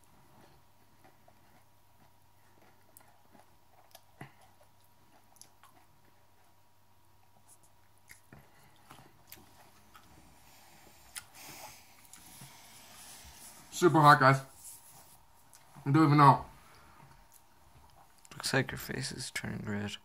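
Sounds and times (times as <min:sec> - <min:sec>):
chewing: 0:00.0 - 0:12.9, 0:16.7 - 0:18.4.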